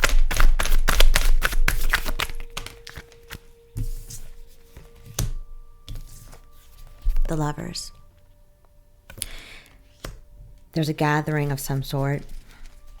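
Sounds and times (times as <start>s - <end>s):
cards being shuffled: 0.0s - 7.3s, 9.9s - 10.3s, 11.8s - 13.0s.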